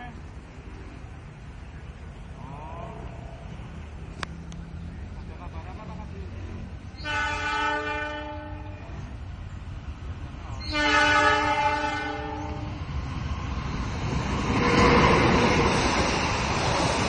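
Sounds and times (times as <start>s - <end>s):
passing train: 0.0s - 17.0s
train horn blasts: 7.0s - 9.0s, 10.6s - 12.8s.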